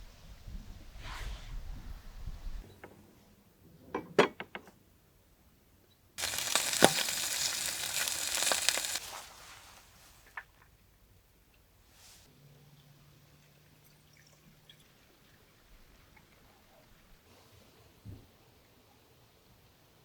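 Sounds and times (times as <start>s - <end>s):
food sizzling in a pan: 6.2s - 9.5s.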